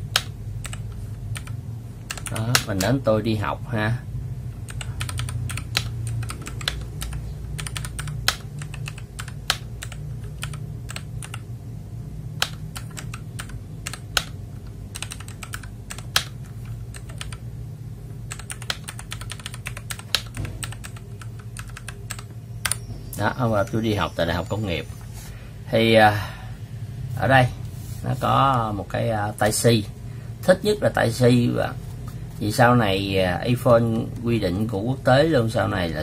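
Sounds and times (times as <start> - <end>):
mechanical keyboard key clacks: 18.3 - 22.8.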